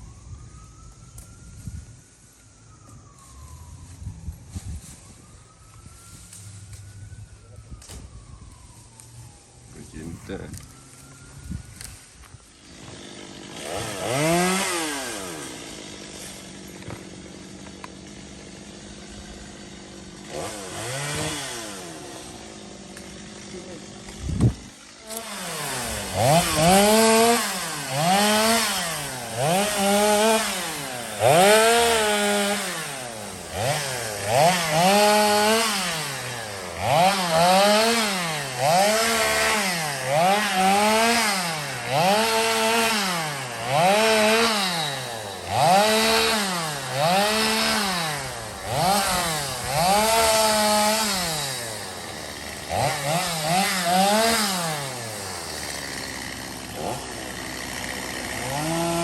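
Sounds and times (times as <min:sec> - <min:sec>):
chainsaw revving cutting wood: 0:12.6 - 0:59.0.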